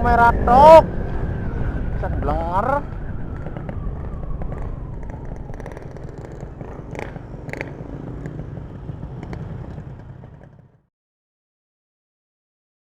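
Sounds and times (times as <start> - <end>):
two-stroke engine rumbling: 2.9 - 10.8.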